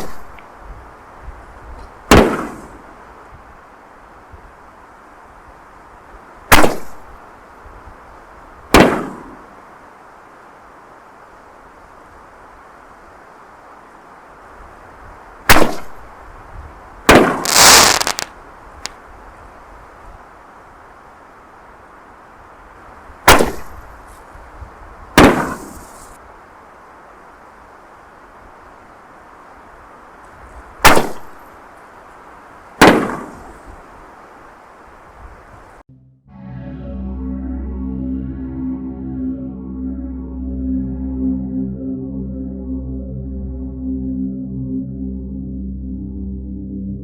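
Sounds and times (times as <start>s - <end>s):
firework bangs: 2.1s - 2.8s, 6.5s - 7.0s, 8.7s - 9.3s, 17.1s - 18.3s, 25.2s - 25.8s, 32.8s - 33.5s
firework crackling: 17.1s - 18.4s.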